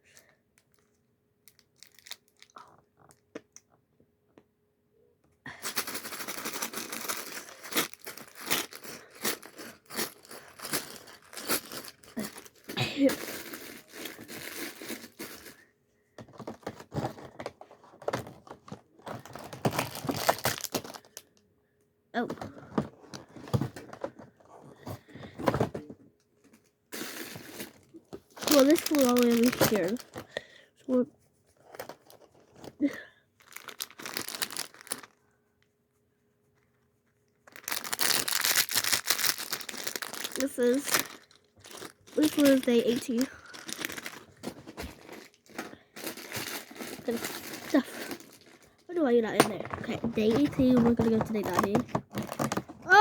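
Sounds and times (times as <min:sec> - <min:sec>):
packaging rustling: 0:01.5 - 0:02.5, 0:05.5 - 0:15.6, 0:16.2 - 0:21.3, 0:26.9 - 0:30.4, 0:31.6 - 0:35.2, 0:37.4 - 0:53.0.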